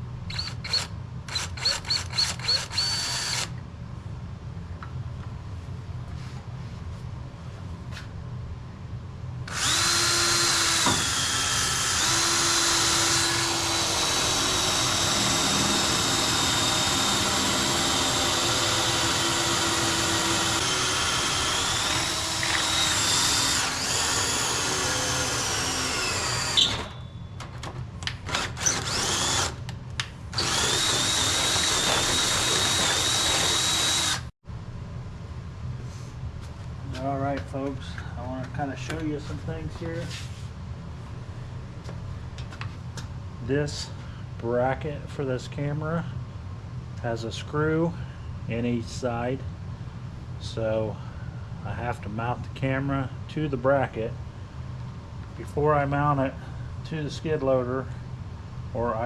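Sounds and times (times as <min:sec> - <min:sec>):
power drill boring through metal: 0:00.3 - 0:03.5, 0:09.5 - 0:27.0, 0:28.3 - 0:29.6, 0:30.4 - 0:34.3.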